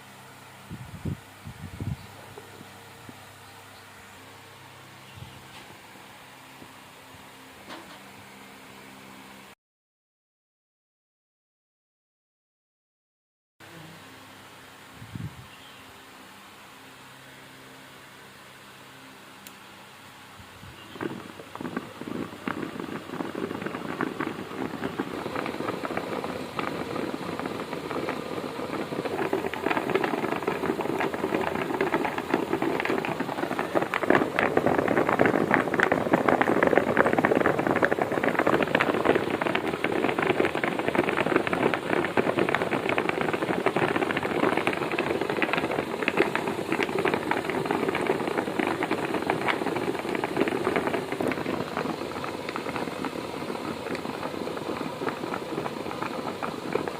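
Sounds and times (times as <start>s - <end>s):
motor hum: 20.4s - 56.9s
ball mill rattling: 20.9s - 56.9s.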